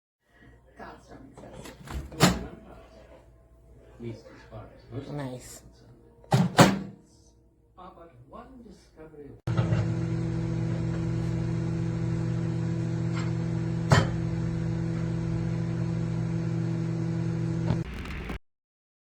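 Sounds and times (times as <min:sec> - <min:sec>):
microwave oven humming: 0:09.5 - 0:17.8.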